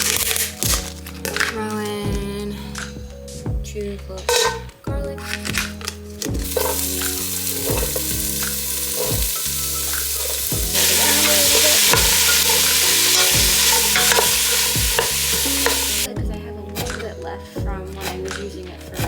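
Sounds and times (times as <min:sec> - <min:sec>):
garlic sizzling in oil: 0:06.4 - 0:16.1.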